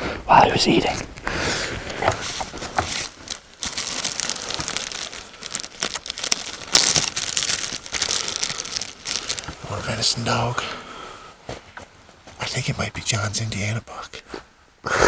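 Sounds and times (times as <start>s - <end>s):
plastic wrapper crinkling and tearing: 0.8s - 10.6s.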